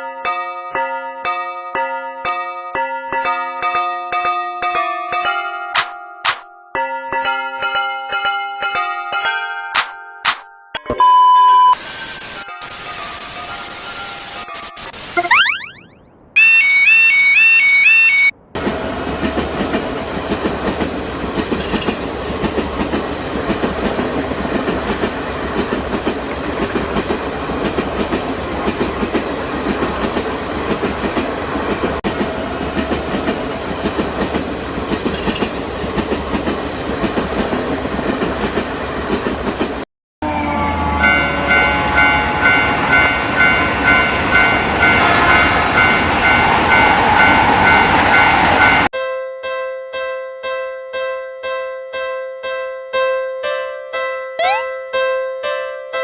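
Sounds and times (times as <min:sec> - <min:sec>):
railroad crossing bell ringing: 0:00.0 - 0:10.8, 0:11.8 - 0:15.0, 0:40.6 - 0:48.9
train wheels clattering on rails: 0:18.6 - 0:39.8.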